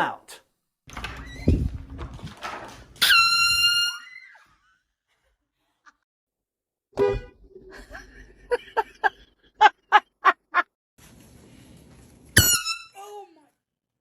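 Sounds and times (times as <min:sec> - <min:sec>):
air horn blasts: 0:07.0 - 0:07.4, 0:12.4 - 0:12.9.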